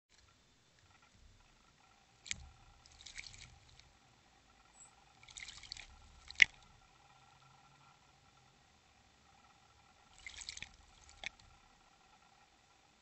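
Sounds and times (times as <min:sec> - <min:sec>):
bird bathing in water: 0:00.1 - 0:13.0
wing-flapping splashes: 0:02.1 - 0:04.0, 0:05.1 - 0:06.9, 0:10.0 - 0:11.7.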